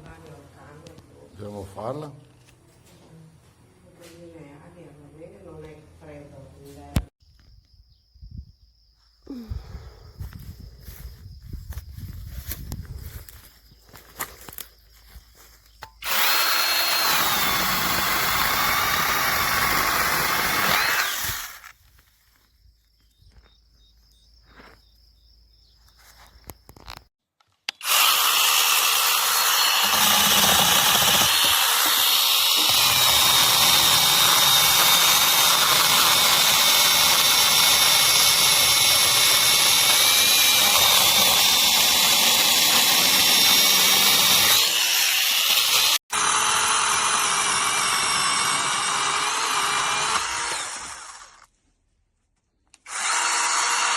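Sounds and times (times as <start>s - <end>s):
chain cutting wood: 15.8s - 21.8s, 27.5s - 51.5s
electric chainsaw whining: 15.9s - 21.7s, 27.7s - 51.5s, 52.8s - 53.9s.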